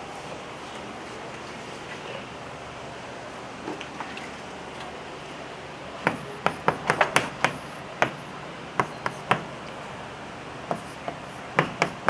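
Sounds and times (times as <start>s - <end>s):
chalk tapping on blackboard: 6.0s - 8.2s, 8.8s - 9.5s, 10.7s - 12.0s.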